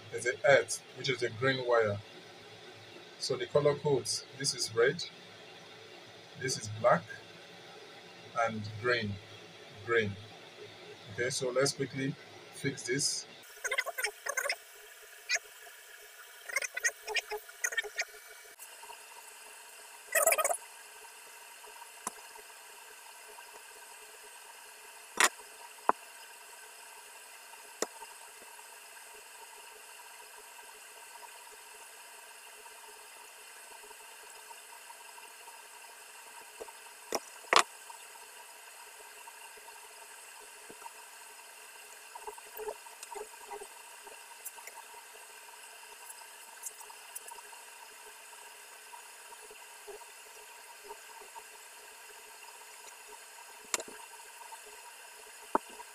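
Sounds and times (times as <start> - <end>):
steady hiss: 0.0 - 2.3, 3.2 - 5.2, 6.4 - 7.6, 8.3 - 13.9, 20.8 - 55.9.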